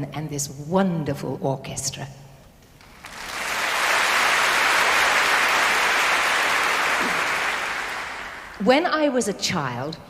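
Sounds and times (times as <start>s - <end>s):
audience applauding: 2.8s - 8.6s.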